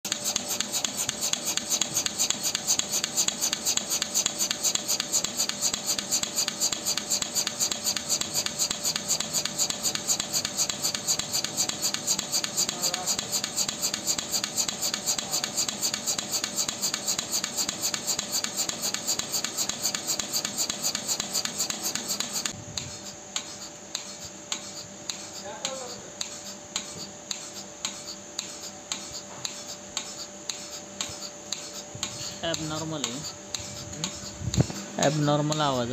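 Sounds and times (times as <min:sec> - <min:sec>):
milking machine pulsator hissing and clicking: 0:00.1 - 0:35.9.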